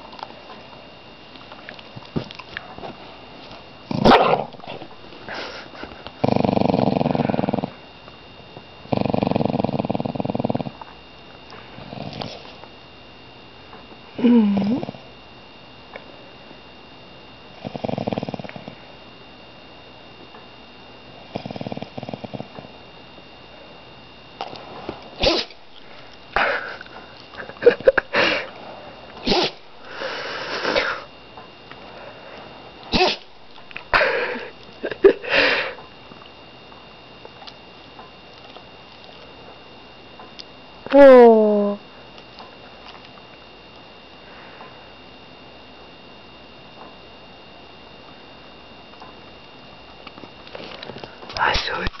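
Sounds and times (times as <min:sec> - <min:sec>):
dog snoring: 0:06.2 - 0:07.8, 0:08.8 - 0:10.8, 0:11.8 - 0:12.5, 0:14.2 - 0:15.0, 0:17.5 - 0:18.8, 0:21.2 - 0:22.7.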